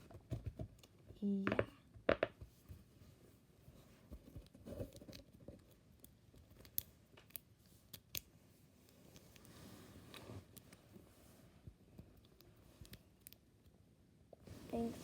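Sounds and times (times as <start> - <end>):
soft rustle: 7.6 - 13.1, 14.4 - 15.0.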